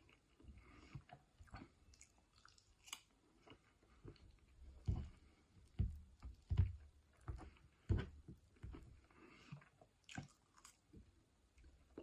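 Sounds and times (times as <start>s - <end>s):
person chewing food: 0.0s - 12.0s.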